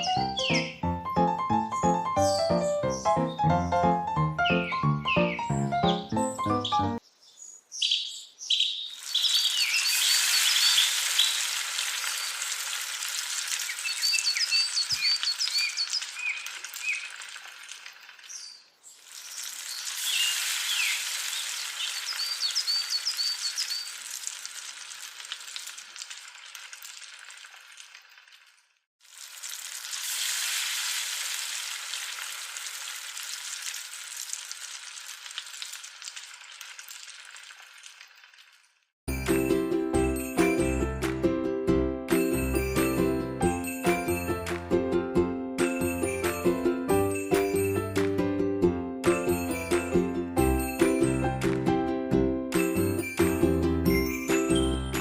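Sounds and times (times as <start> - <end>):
oil sizzling in a small pan: 8.9 - 38.9.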